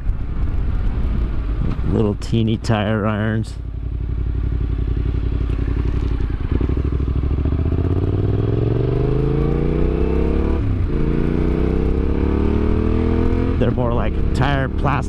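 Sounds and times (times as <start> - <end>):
motorcycle engine accelerating: 3.0 - 15.0.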